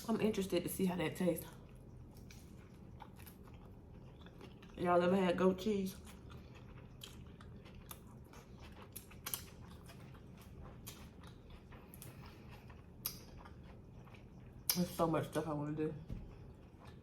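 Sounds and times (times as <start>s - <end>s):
faint chewing: 1.4s - 5.1s, 5.9s - 15.0s, 16.2s - 17.0s.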